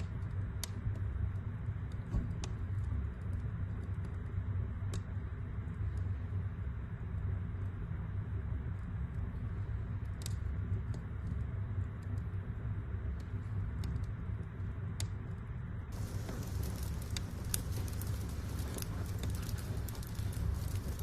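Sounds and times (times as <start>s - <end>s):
low steady fire noise: 0.0s - 21.0s
wood fire crackling: 15.9s - 21.0s.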